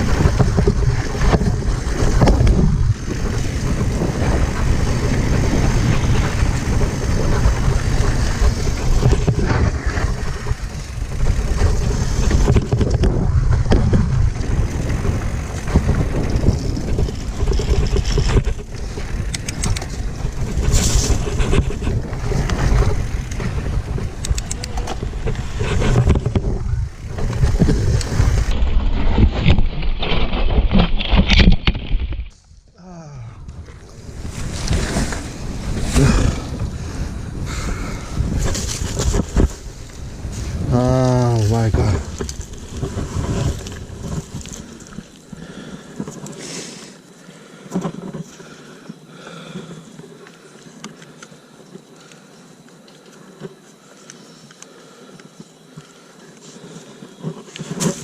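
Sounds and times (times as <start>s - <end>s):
bike rattling over rocks: 0.0s - 32.7s, 33.5s - 54.5s, 55.3s - 58.0s
wind rushing over microphone: 0.0s - 46.3s.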